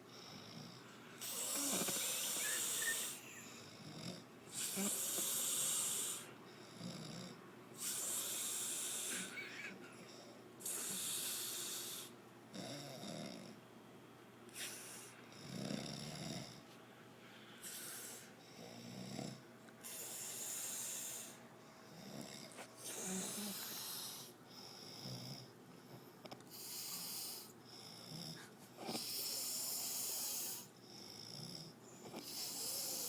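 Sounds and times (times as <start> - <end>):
person snoring: 0.3 - 9.8, 22.1 - 24.3.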